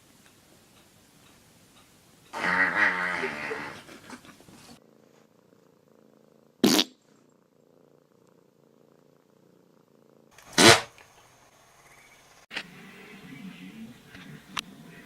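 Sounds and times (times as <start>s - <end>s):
cat purring: 0.1s - 10.6s, 12.7s - 15.0s
loud farts: 2.3s - 3.9s, 6.6s - 7.2s, 10.4s - 10.9s.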